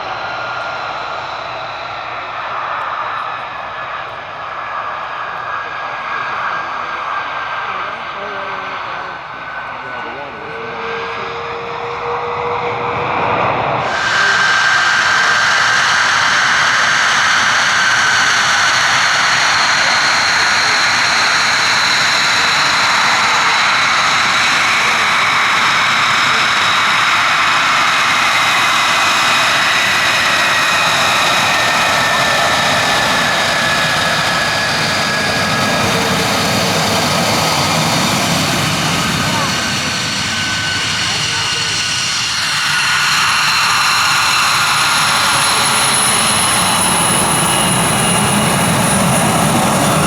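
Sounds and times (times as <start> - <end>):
jet engine whining: 0.0 - 50.0.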